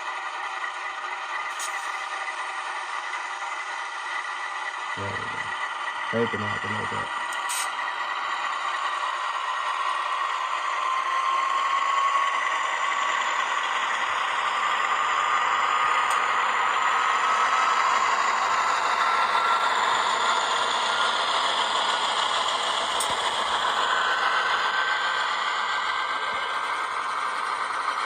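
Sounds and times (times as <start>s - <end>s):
model train rattling on track: 0.0s - 28.0s
model diesel engine sound rising: 1.0s - 28.0s.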